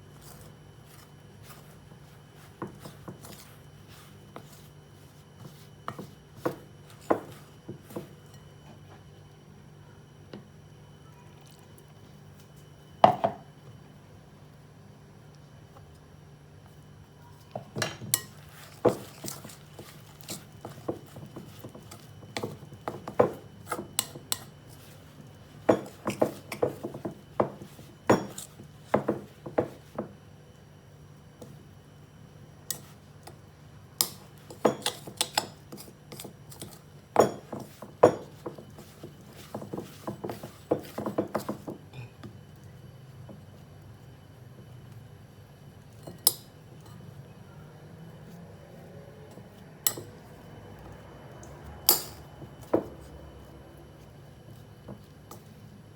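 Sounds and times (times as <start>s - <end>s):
utensils clinking against dishes: 51.9s - 52.8s.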